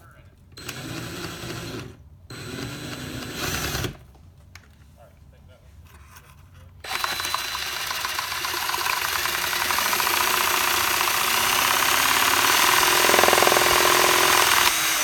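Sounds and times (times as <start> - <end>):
power drill motor: 0.6 - 4.0, 6.8 - 15.0.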